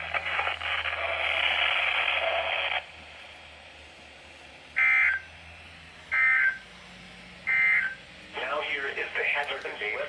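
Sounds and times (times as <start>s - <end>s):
radio static: 0.0s - 2.9s.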